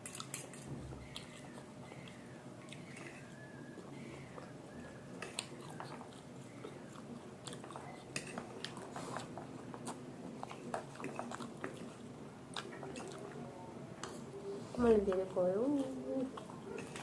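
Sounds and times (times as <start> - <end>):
person chewing food: 0.0 - 13.4.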